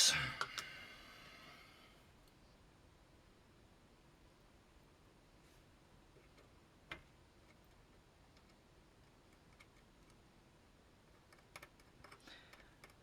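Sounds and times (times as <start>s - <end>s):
faint clicks of small tools: 0.4s - 0.8s, 11.2s - 13.0s.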